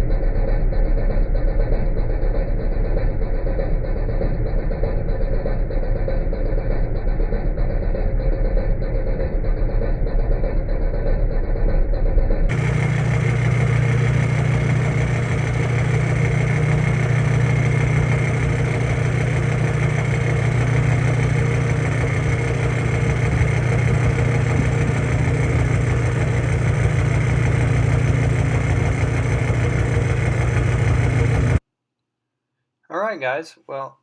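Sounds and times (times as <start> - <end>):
milling machine humming: 12.5 - 31.6.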